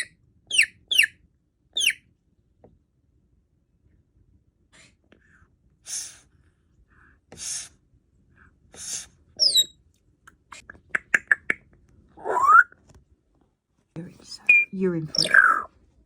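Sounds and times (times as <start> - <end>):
parrot whistled squawk: 0.5 - 1.1, 1.8 - 2.0, 9.4 - 9.7, 12.2 - 12.7, 14.4 - 15.7
parrot falling whistle: 12.2 - 12.7.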